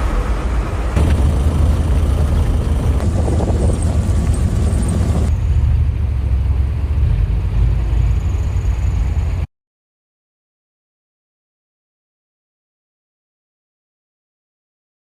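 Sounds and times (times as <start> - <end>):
wind buffeting microphone: 0.4 - 5.3.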